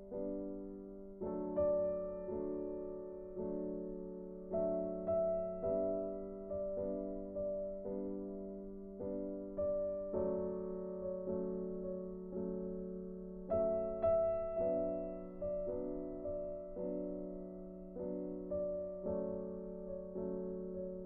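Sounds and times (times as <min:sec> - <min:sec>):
gentle piano chords: 0:00.0 - 0:21.0.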